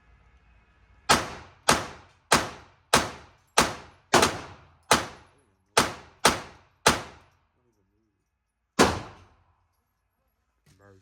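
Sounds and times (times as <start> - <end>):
gunshots with echo: 1.1 - 7.2, 8.8 - 9.3.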